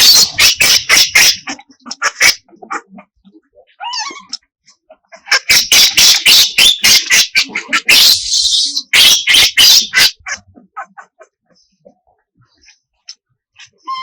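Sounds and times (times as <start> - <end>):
baby monkey screeching: 0.0 - 4.5, 5.1 - 11.2, 13.6 - 14.0.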